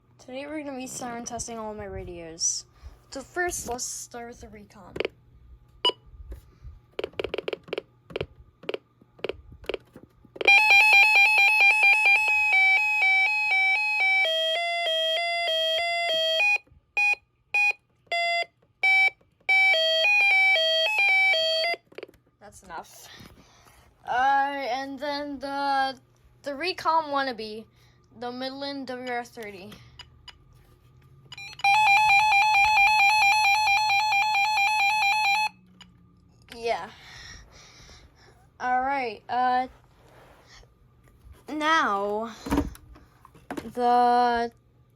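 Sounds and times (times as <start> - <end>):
rapid electronic alert beeping: 7.0 - 10.7
electronic siren alarm: 10.4 - 22.1, 31.4 - 35.8.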